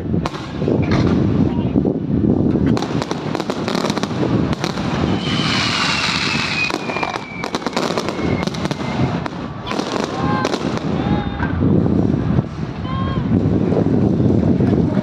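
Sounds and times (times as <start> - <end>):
fireworks bangs and crackles: 0.0 - 15.0
crowd voices: 4.3 - 15.0
firework whistle falling: 5.0 - 9.2.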